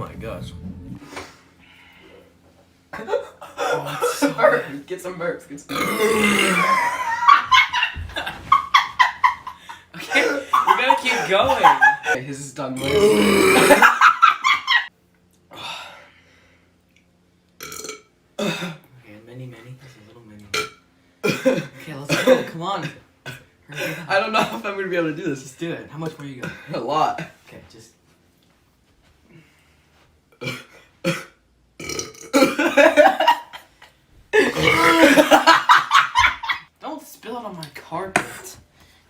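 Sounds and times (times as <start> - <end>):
person belching: 5.7 - 7.0, 12.8 - 13.9, 17.6 - 18.7, 31.8 - 32.6, 34.4 - 35.4
person burping: 5.7 - 7.1, 12.8 - 14.0, 17.6 - 18.8, 30.4 - 32.8, 34.4 - 35.4.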